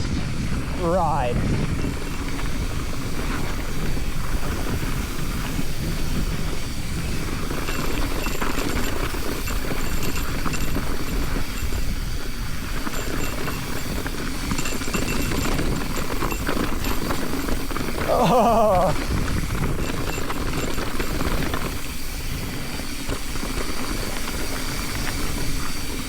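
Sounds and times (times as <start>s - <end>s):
wind buffeting microphone: 0.0s - 18.1s, 18.8s - 26.0s
bike tyres rolling on rocky trail: 0.0s - 26.0s.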